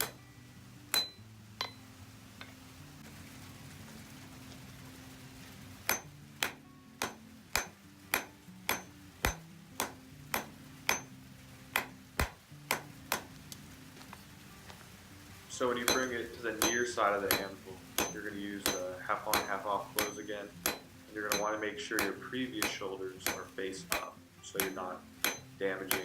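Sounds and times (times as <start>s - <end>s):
hammer striking steel on anvil: 0.0s - 0.2s, 0.9s - 1.8s, 5.9s - 11.1s, 11.7s - 13.3s, 15.8s - 26.0s
soft background music: 0.0s - 26.0s.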